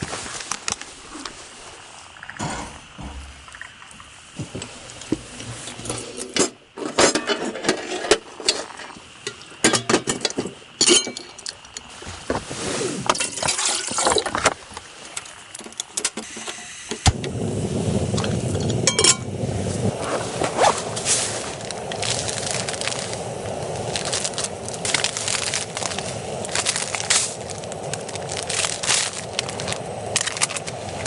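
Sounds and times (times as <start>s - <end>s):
metal cookware clinking: 9.3s - 11.6s
liquid sloshing: 13.2s - 14.4s.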